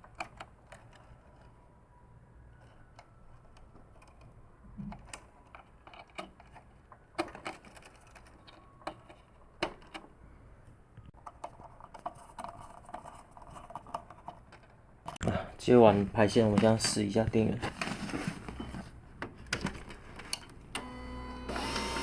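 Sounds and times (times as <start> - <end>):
plastic parts clicking: 2.6 - 10.1.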